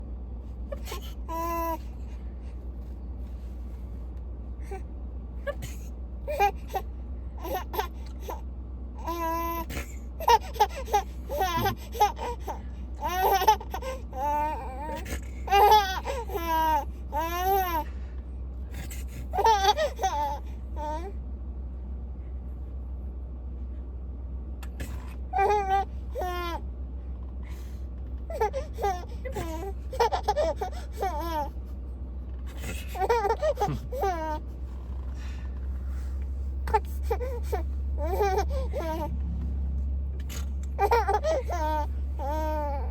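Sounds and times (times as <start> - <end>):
baby laughing: 9.0 - 17.8, 19.2 - 21.0, 28.3 - 31.5, 32.5 - 34.4, 36.7 - 39.1, 40.6 - 42.9.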